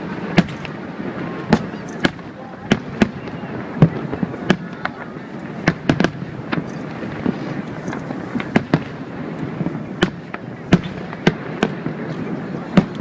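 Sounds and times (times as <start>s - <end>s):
crowd and city hum: 0.0s - 13.0s
fireworks bangs: 0.0s - 13.0s.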